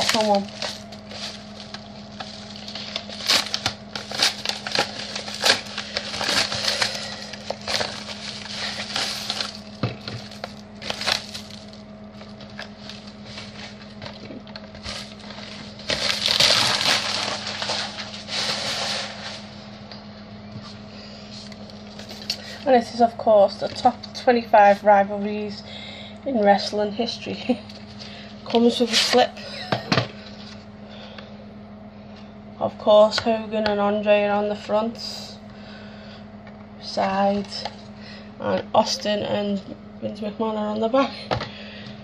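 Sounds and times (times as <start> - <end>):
plastic packaging crinkling: 0.0 - 19.6.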